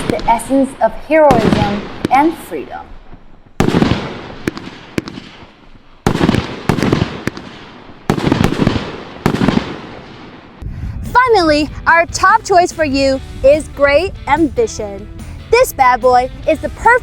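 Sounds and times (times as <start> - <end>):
firework bangs: 1.3 - 2.6, 3.5 - 10.7.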